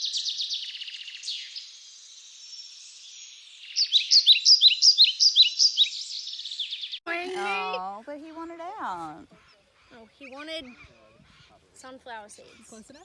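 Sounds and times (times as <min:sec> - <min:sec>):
birds chirping and trilling: 0:00.0 - 0:13.0.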